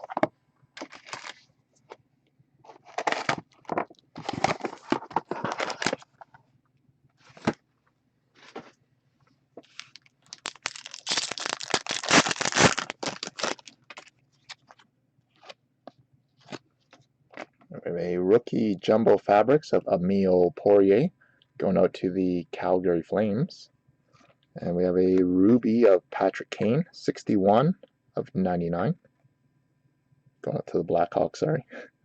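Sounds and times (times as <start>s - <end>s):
foil wrappers tearing and crinkling: 0.8s - 1.4s, 2.7s - 3.5s, 9.6s - 14.7s.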